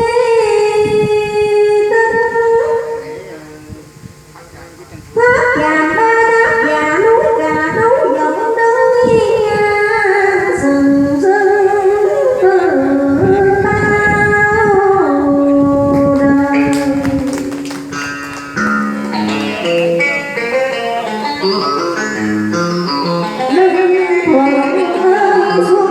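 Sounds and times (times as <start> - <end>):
plucked string accompaniment: 16.0 - 25.9.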